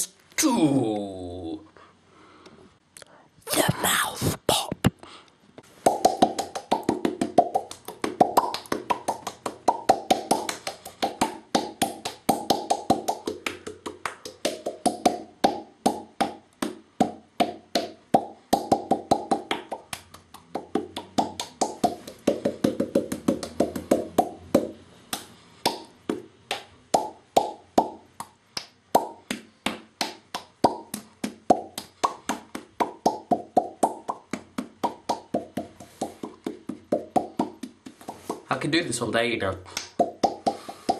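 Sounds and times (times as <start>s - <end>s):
man making mouth pops: 3.0s - 5.1s, 5.8s - 16.3s, 30.4s - 38.5s, 39.7s - 40.9s.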